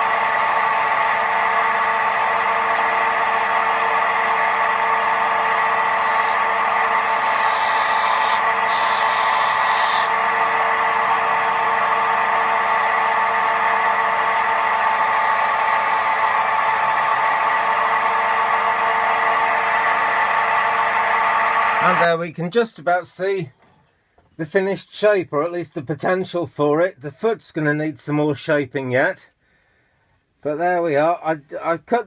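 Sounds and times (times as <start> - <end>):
turning tool cutting hiss: 0.0 - 22.1
wood lathe whining: 0.0 - 22.2.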